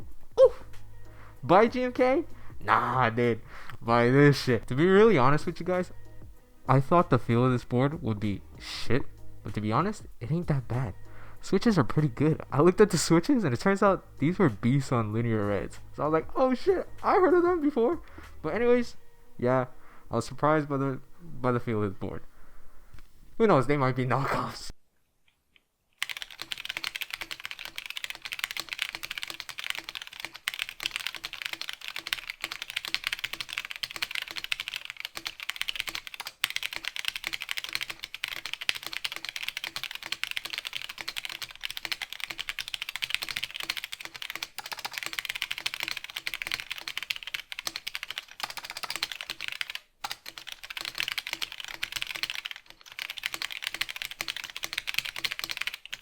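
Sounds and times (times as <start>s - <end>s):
mechanical keyboard typing: 26.0s - 56.0s.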